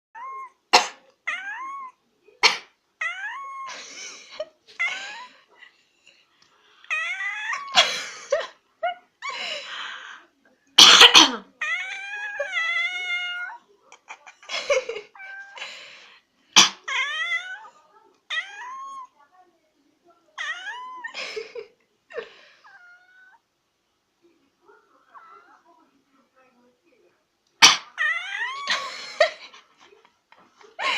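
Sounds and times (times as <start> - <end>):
cat meowing: 0.2 - 0.6, 1.2 - 2.0, 3.0 - 3.7, 6.9 - 7.8, 11.6 - 13.7, 16.7 - 19.1, 20.4 - 21.1, 22.6 - 23.4, 27.6 - 28.8
person coughing: 10.8 - 11.5.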